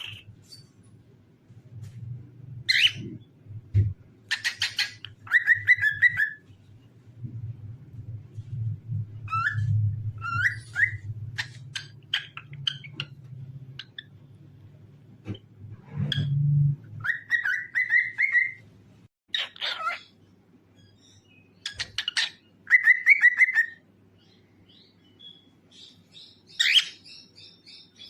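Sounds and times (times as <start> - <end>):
cockatiel chirping and whistling: 2.7 - 3.1, 4.3 - 6.4, 9.2 - 13.1, 17.0 - 18.6, 20.8 - 23.8, 26.5 - 27.8.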